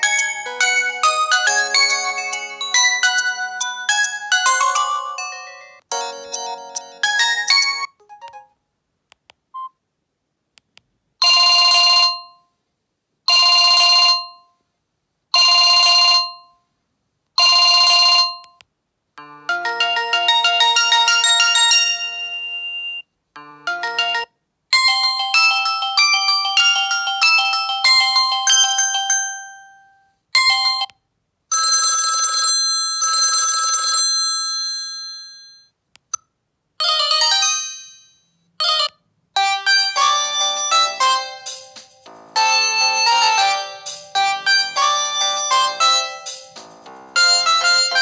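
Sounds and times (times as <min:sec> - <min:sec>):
phone ringtone melodies: 0:00.0 - 0:08.6, 0:19.2 - 0:30.9, 0:36.8 - 0:48.0.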